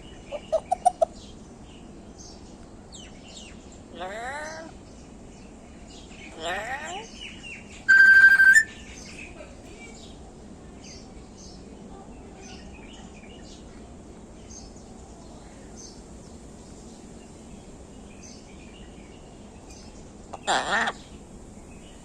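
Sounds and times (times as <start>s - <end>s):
low background hum: 0.0s - 22.0s
faint bird chirps: 6.0s - 10.2s
parrot whistled call: 7.9s - 8.7s.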